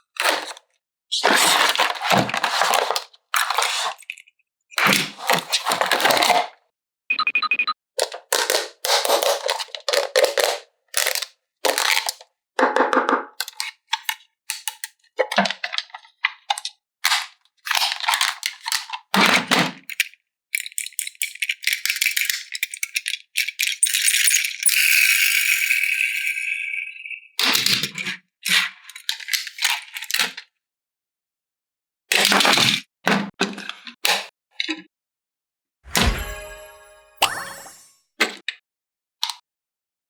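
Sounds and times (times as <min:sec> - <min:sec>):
plastic toy parts rattling: 0:08.1 - 0:12.2, 0:19.9 - 0:24.6.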